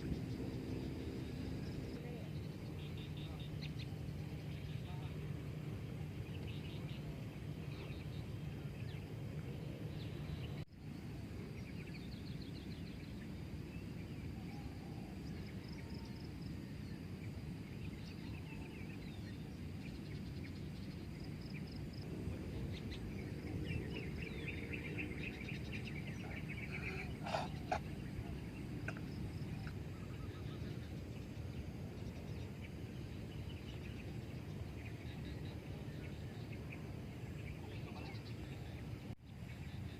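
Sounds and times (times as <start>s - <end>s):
birds chirping and trilling: 17.7s - 39.9s.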